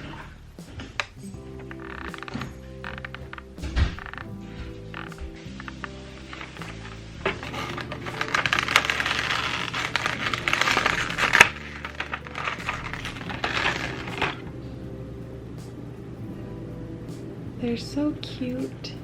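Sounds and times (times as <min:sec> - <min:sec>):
plastic keycaps clattering: 0:06.3 - 0:14.4.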